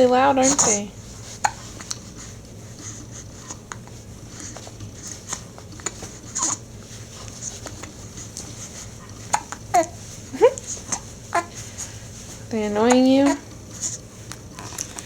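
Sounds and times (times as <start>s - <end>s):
faint room hum: 0.0s - 15.0s
baby hiccups: 1.4s - 1.7s.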